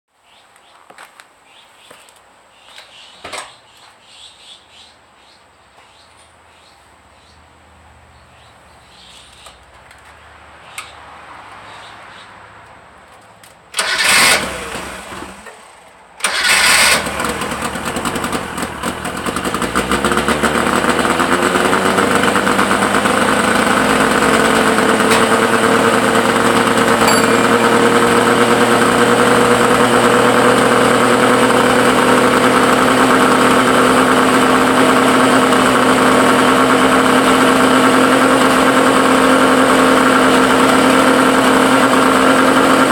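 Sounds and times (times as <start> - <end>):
car engine starting and idling: 13.7 - 42.9.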